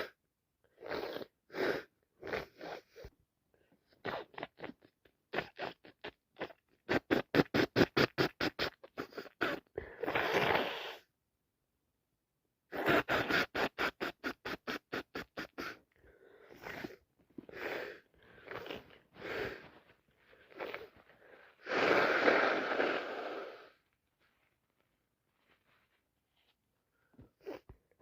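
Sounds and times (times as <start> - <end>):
woman sniffing congested nose: 0.0 - 3.1, 6.9 - 11.1, 12.7 - 23.9, 27.3 - 27.7
loud nose blast: 12.7 - 15.8, 21.6 - 23.8.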